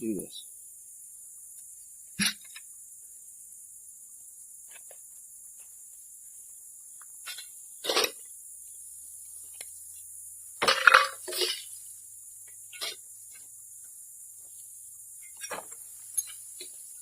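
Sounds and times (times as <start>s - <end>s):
crickets chirring: 0.0s - 17.0s
scrap metal clattering onto screen: 7.2s - 8.2s, 10.6s - 11.8s.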